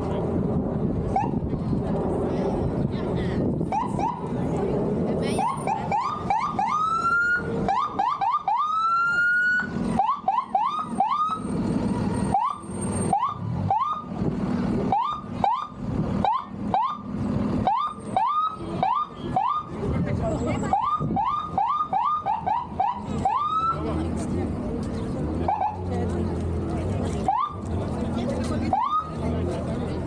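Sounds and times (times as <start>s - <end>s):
electronic siren wailing: 5.4s - 11.4s, 12.3s - 14.1s, 14.9s - 17.1s, 17.7s - 19.7s, 20.7s - 23.9s, 28.7s - 29.1s.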